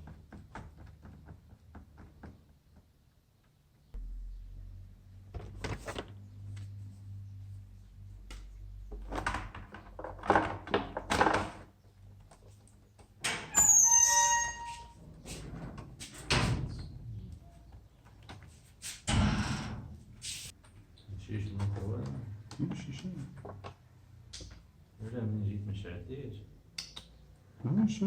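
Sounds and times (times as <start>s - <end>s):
low steady hum: 4.0s - 9.0s
short squeak: 13.5s - 15.0s.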